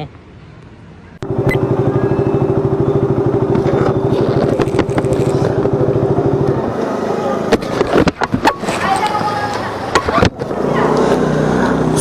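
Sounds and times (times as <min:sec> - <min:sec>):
motorcycle engine running: 0:01.2 - 0:08.0
handling clicks and knocks: 0:03.5 - 0:05.8.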